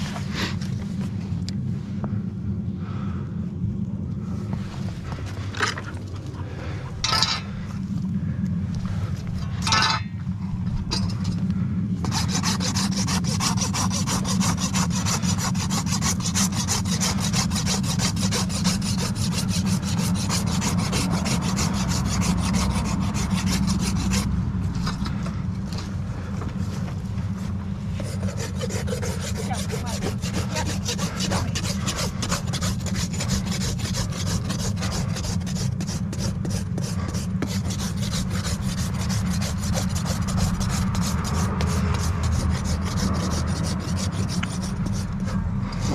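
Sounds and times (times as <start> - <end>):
low rumble: 0.0 - 35.4
rasp scraping hoof: 12.0 - 25.4, 28.0 - 45.9.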